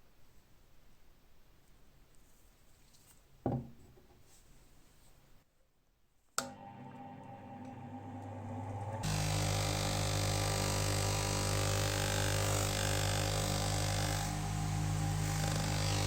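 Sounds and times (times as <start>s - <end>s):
motor humming: 6.4s - 16.0s
polishing wheel buffing metal: 9.0s - 16.0s.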